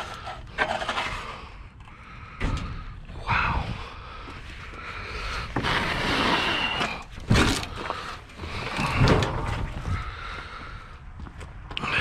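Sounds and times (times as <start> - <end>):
scrap metal scraping and clunking: 0.0 - 1.4.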